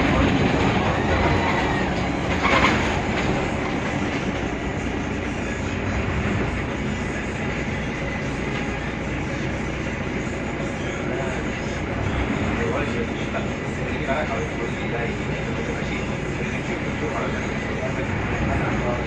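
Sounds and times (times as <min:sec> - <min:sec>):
loud clatter: 0:00.0 - 0:07.3
bus body rattling: 0:00.0 - 0:19.0
bus diesel engine running: 0:00.0 - 0:19.0.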